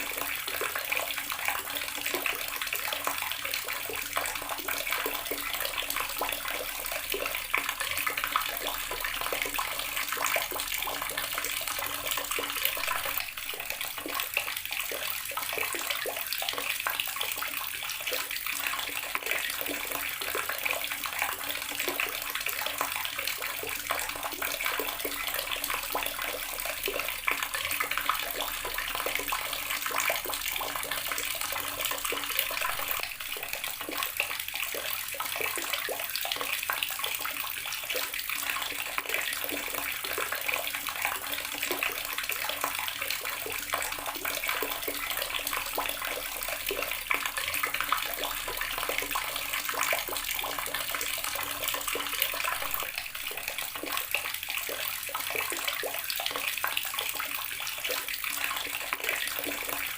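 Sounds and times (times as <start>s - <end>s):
garden tap water splashing: 0.0s - 59.9s.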